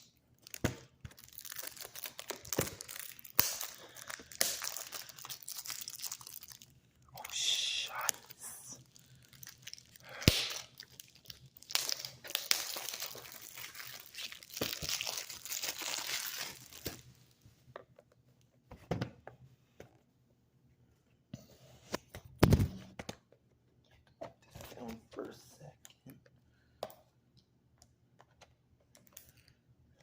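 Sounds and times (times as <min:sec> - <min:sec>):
plastic wrap tearing and crinkling: 0:00.4 - 0:06.8, 0:07.9 - 0:17.2.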